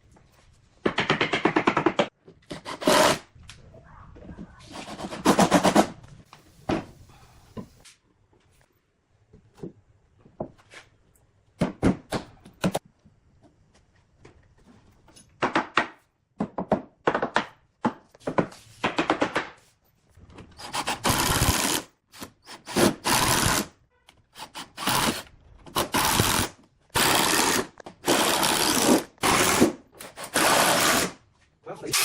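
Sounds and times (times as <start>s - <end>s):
tool cutting wood: 20.6s - 23.7s, 24.4s - 31.2s.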